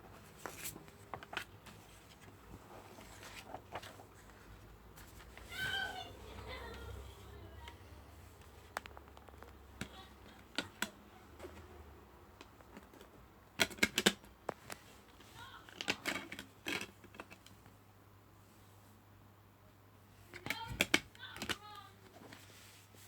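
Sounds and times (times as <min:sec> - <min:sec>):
plastic case clicking: 0:12.4 - 0:14.8, 0:20.4 - 0:21.6.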